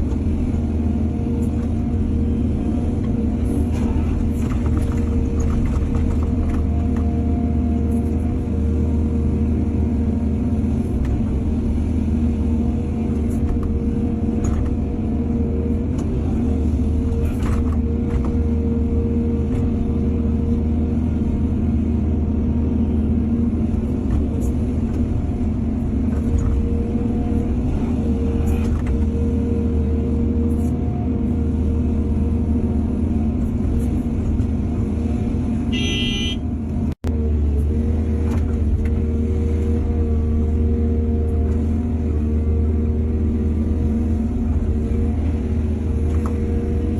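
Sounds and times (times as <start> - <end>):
excavator diesel engine running: 0.0 - 46.9
short high-pitched beep: 35.8 - 36.4.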